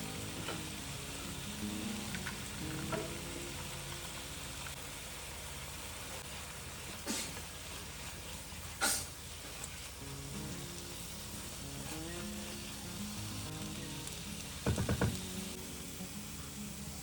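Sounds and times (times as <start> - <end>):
food sizzling in a pan: 0.0 - 17.0
utensil clacking against pan: 14.6 - 15.3.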